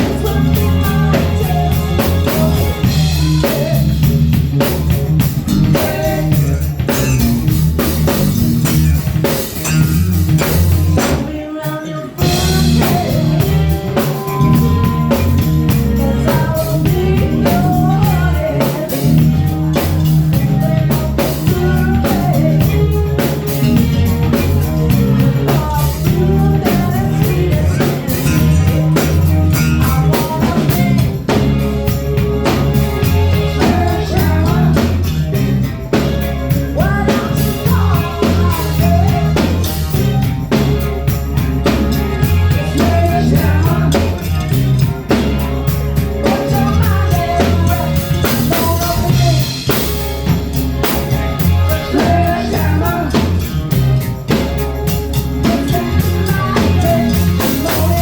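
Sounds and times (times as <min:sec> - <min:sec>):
drum kit: 0:00.0 - 0:58.0
guitar: 0:00.0 - 0:58.0
person singing: 0:00.0 - 0:58.0.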